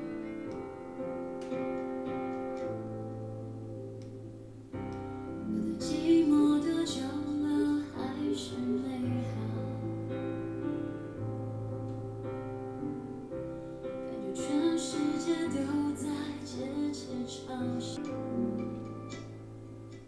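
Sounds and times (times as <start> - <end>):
piano: 0.0 - 20.0
woman singing sustained notes: 5.3 - 10.3, 14.0 - 19.3.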